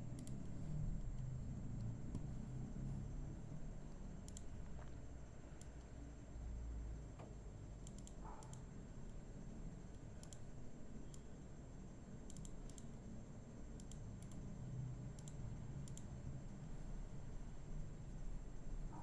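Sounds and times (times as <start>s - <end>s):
faint low hum: 0.0s - 19.0s
computer mouse clicks: 0.1s - 0.5s, 1.1s - 2.4s, 4.0s - 6.0s, 7.2s - 9.2s, 9.9s - 11.3s, 12.2s - 13.0s, 13.8s - 14.4s, 15.1s - 16.1s.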